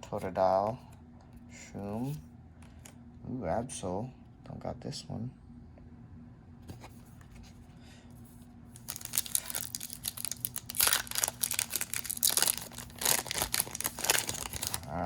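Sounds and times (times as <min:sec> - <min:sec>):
foil wrapper tearing and crinkling: 0:08.8 - 0:15.0.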